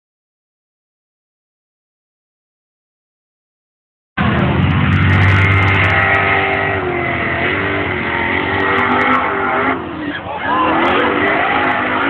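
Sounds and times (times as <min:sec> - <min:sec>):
off-road vehicle engine running: 0:04.2 - 0:12.0.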